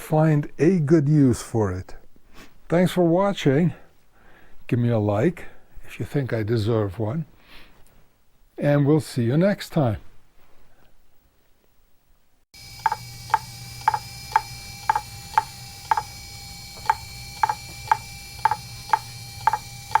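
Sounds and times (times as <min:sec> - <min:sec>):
faint high whine: 0:12.6 - 0:20.0
clock-like ticking: 0:12.8 - 0:16.2, 0:16.8 - 0:20.0.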